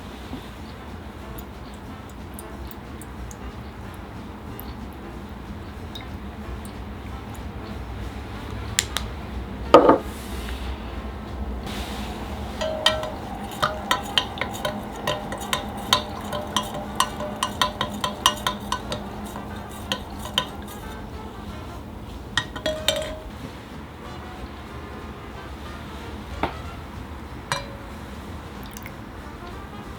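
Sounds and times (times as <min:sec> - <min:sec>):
utensil clinking against bowl: 0:05.9 - 0:07.5, 0:12.3 - 0:23.4, 0:27.5 - 0:28.9.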